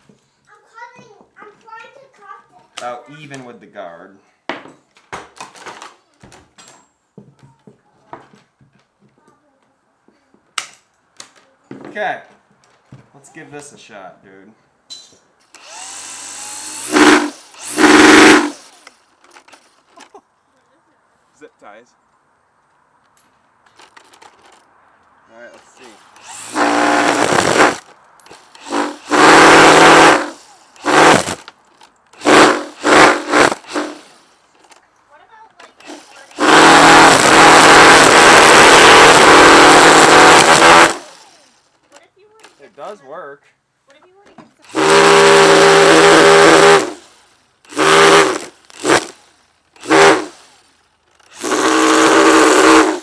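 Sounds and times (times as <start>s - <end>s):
string trimmer spinning: 15.5s - 20.2s, 23.7s - 24.6s, 25.4s - 34.8s, 35.6s - 43.0s, 44.6s - 53.0s.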